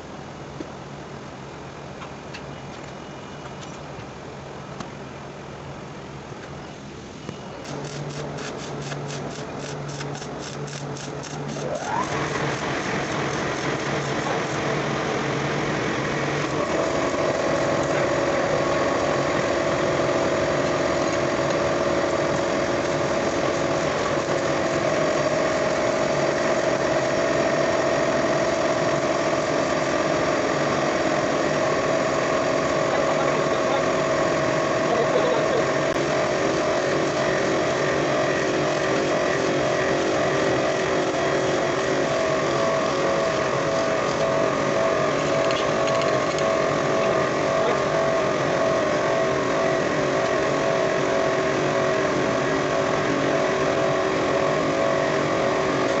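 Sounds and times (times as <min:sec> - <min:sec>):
motor-driven machine humming: 0:07.5 - 0:56.0
rising motor whine: 0:11.2 - 0:56.0.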